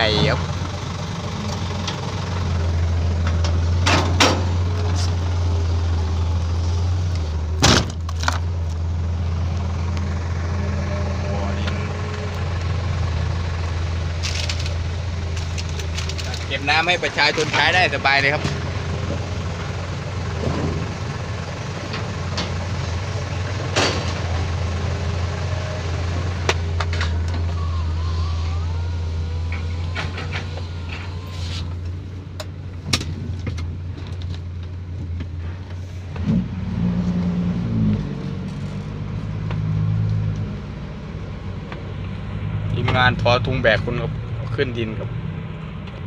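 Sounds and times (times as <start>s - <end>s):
diesel truck engine running: 0.0s - 46.0s
clunks and rattles: 0.1s - 10.5s, 11.6s - 27.7s, 29.2s - 36.5s.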